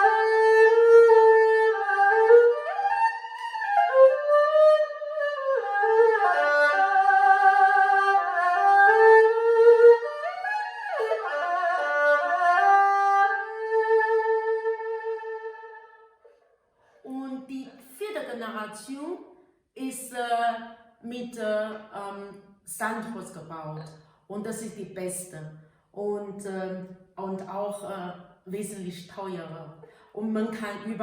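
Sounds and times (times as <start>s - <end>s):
bowed fiddle solo melody: 0.0s - 16.1s.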